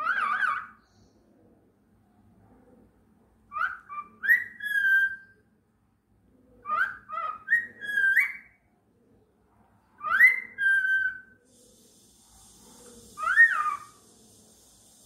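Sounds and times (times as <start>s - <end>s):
faint steady hiss: 0.0s - 15.0s
cockatiel whistling: 3.5s - 5.3s, 6.7s - 8.5s, 10.0s - 11.4s, 13.2s - 14.0s.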